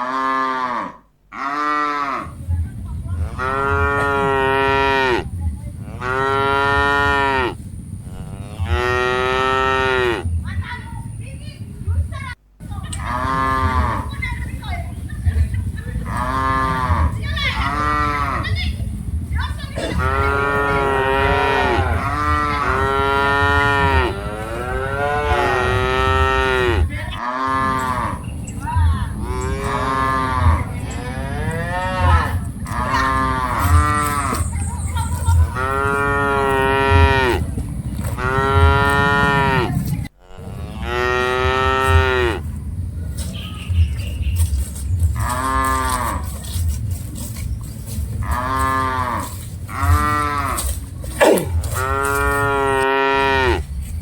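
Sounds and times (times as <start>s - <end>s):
cattle mooing: 0.0s - 2.4s, 3.1s - 10.3s, 13.0s - 14.2s, 16.0s - 18.6s, 19.8s - 28.2s, 29.2s - 34.5s, 35.6s - 42.4s, 48.2s - 53.7s.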